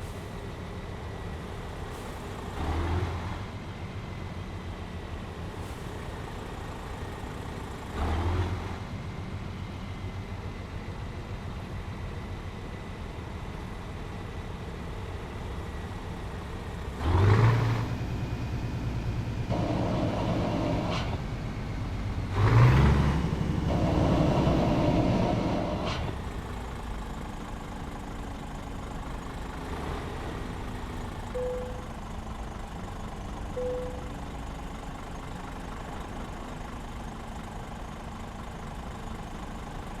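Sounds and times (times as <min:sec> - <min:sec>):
diesel truck engine idling and revving: 0:00.0 - 0:40.0
short beeps: 0:31.4 - 0:32.0, 0:33.6 - 0:34.2.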